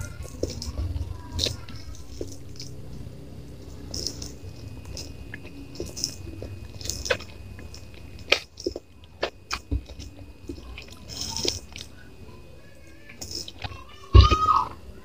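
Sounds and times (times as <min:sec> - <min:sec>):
chewing with wet mouth smacks: 0:00.0 - 0:12.0.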